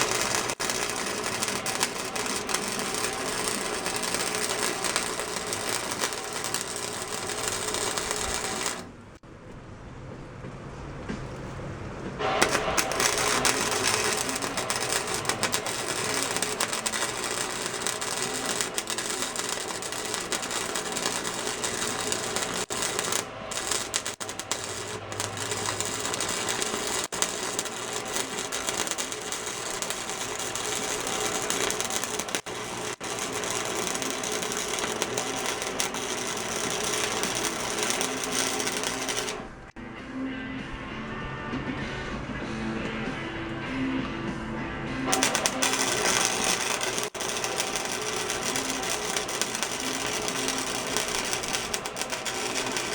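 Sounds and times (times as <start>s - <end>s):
welder arc crackling: 0.0s - 9.2s, 12.2s - 39.8s, 45.1s - 52.9s.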